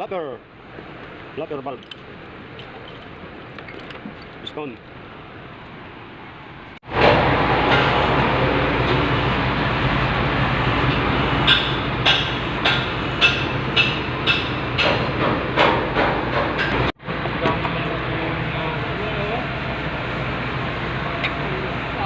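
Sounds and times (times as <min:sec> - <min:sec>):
machine running with low hum: 0:06.9 - 0:14.8.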